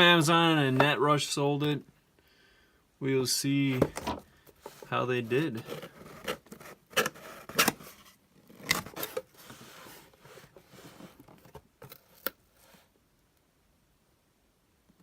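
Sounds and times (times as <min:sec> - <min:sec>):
packaging rustling and scraping: 0:03.7 - 0:12.9.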